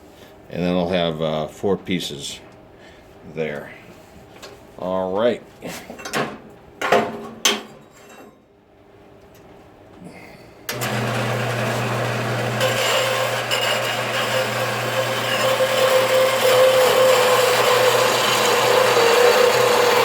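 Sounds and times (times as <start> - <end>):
band saw motor hum: 10.7 - 20.0.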